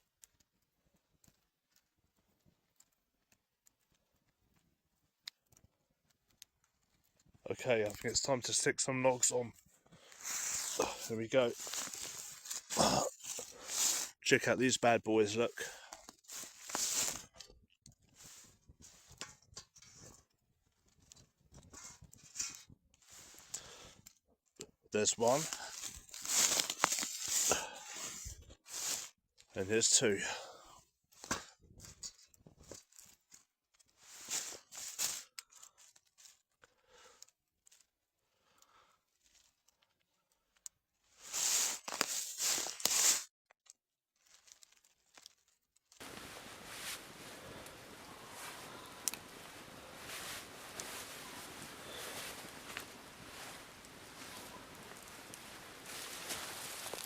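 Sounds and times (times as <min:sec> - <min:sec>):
firewood logs rustling: 0:09.7 - 0:14.4, 0:15.3 - 0:20.2, 0:25.0 - 0:29.2, 0:31.2 - 0:36.2, 0:41.2 - 0:43.3, 0:46.0 - 0:57.0
steady hiss: 0:46.0 - 0:57.0.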